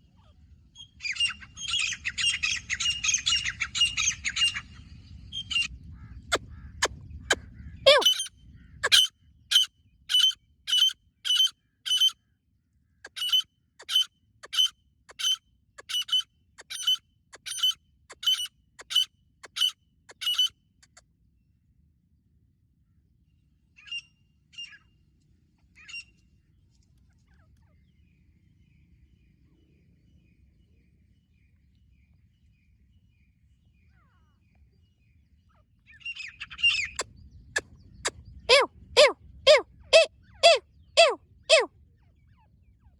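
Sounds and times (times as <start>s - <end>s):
francolin sharp high calls: 7.9s - 12.2s, 13.1s - 20.5s.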